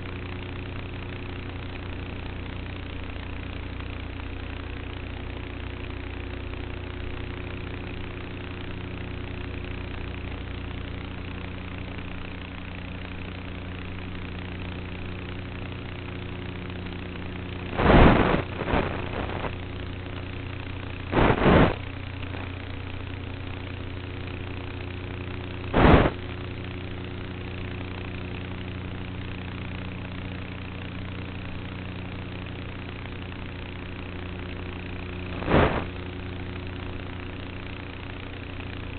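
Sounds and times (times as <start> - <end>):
model plane motor and propeller: 0.0 - 38.9
bursts of rushing noise: 17.7 - 19.5, 21.1 - 21.8, 25.8 - 26.2, 35.4 - 35.9.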